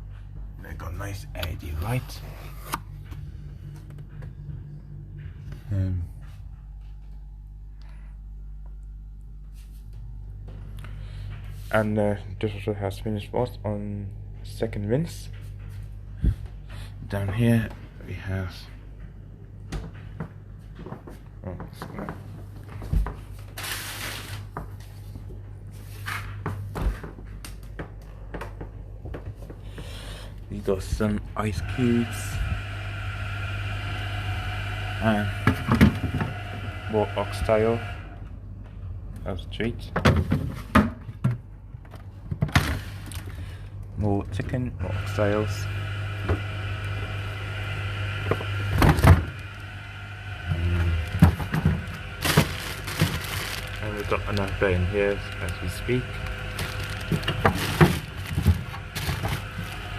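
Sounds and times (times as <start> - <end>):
steady low hum: 0.0 - 59.9
freezer drawers clattering: 51.1 - 59.9.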